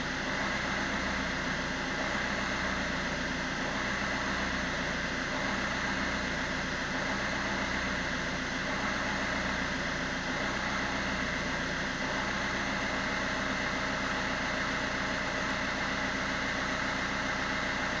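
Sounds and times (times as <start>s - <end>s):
diesel engine idling roughly: 0.0s - 18.0s.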